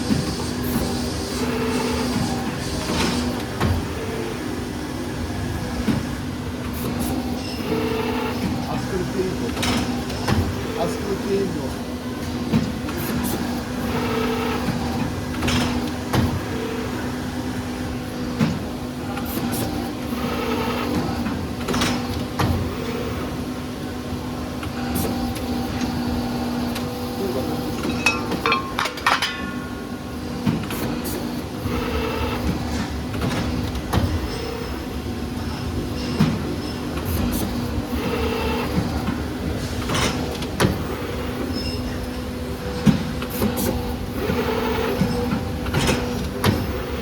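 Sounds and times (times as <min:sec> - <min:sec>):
machine motor hum: 0:00.0 - 0:47.0
machine clunks and clicks: 0:01.8 - 0:04.1, 0:09.4 - 0:10.7, 0:12.2 - 0:13.5, 0:14.4 - 0:16.6, 0:18.2 - 0:20.0, 0:20.6 - 0:23.1, 0:27.6 - 0:31.4, 0:32.1 - 0:34.7, 0:35.4 - 0:47.0.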